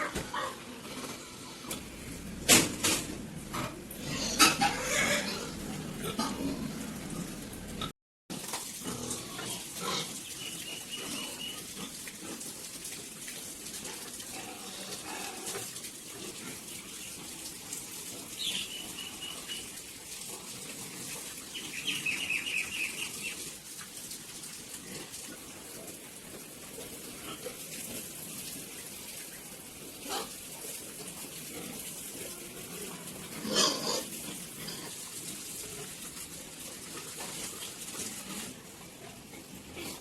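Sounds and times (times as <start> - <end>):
pigs grunting and squealing: 0.0 - 7.9, 8.8 - 12.4, 13.9 - 16.6, 30.0 - 30.4, 31.5 - 35.9, 37.1 - 40.0.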